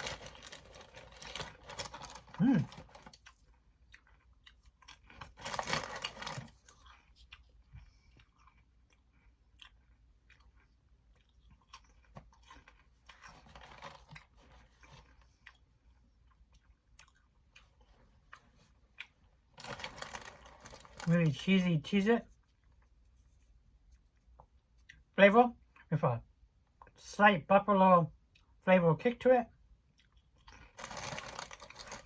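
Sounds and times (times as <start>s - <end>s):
person chewing crunchy crackers: 0.0s - 21.4s, 29.5s - 32.0s.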